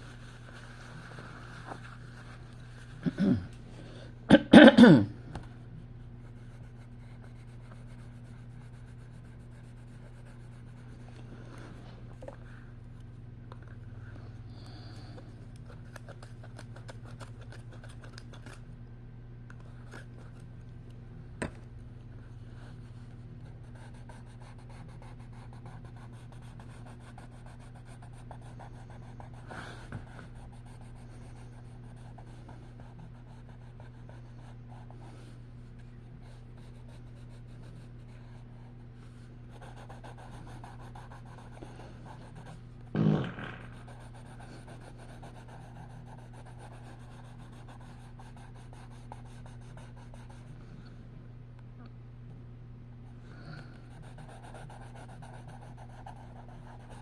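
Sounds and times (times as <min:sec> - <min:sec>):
steady low hum: 0:00.0 - 0:57.0
pencil scratching on paper: 0:39.5 - 0:42.6, 0:43.8 - 0:50.4, 0:54.0 - 0:57.0.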